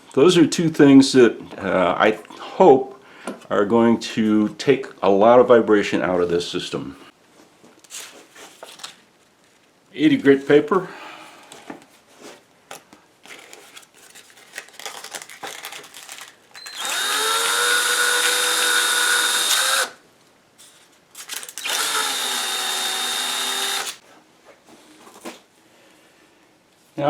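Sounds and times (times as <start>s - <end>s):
electric drill spinning: 16.6s - 20.0s, 21.2s - 24.0s.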